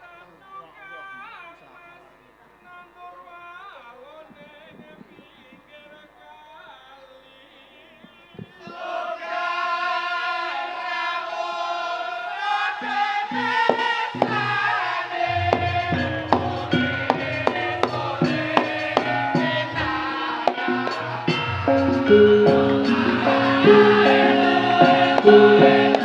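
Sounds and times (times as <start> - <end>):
singing voices: 0.0 - 26.0
sustained instrument tones: 12.2 - 26.0
drum strokes: 12.4 - 26.0
person singing softly: 13.4 - 26.0.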